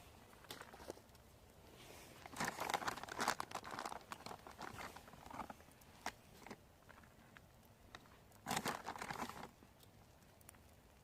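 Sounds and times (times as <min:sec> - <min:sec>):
plastic packaging crinkling: 0:02.2 - 0:07.1, 0:08.0 - 0:09.6.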